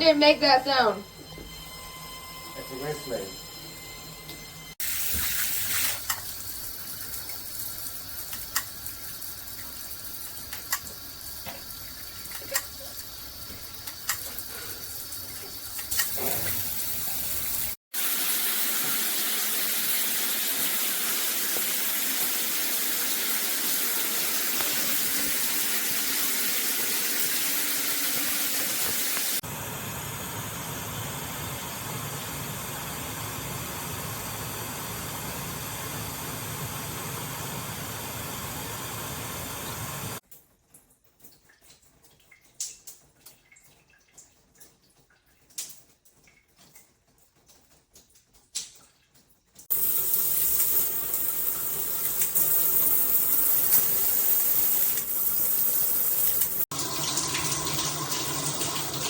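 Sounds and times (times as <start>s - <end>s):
shower head whistle: 0.4s - 6.2s
shower head spraying water: 4.8s - 29.5s, 49.7s - 59.0s.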